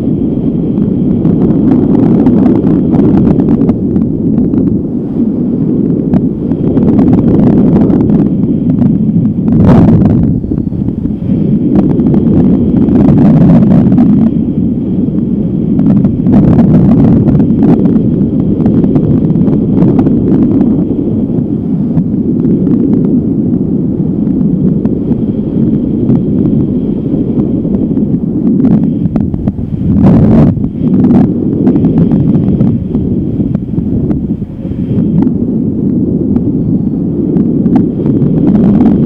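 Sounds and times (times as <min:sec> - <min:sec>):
wind buffeting microphone: 0:00.0 - 0:39.0.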